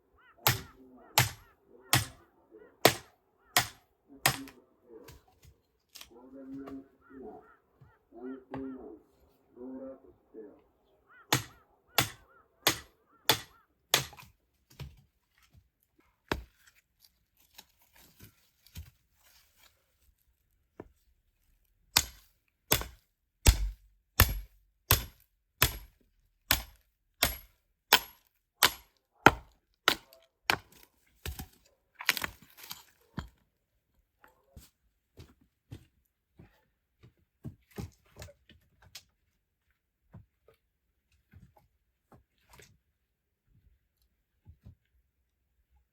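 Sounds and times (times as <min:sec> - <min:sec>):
firewood being chopped: 0:00.4 - 0:02.1, 0:02.8 - 0:04.5, 0:11.3 - 0:14.3, 0:22.0 - 0:25.9, 0:26.5 - 0:32.8.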